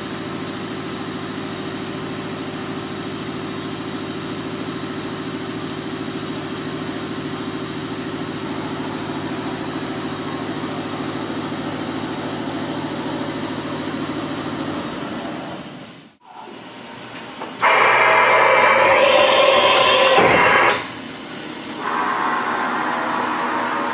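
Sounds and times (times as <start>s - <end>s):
milling machine hum: 1.0s - 23.9s
thin high whine: 6.8s - 16.5s, 17.6s - 23.9s.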